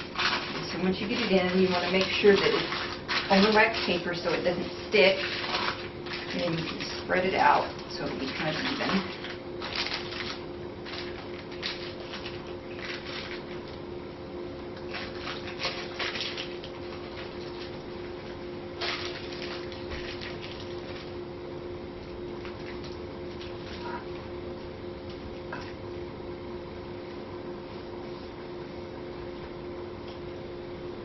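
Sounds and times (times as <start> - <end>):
spatula scraping fudge: 0.0 - 7.3
steady low hum: 0.0 - 31.0.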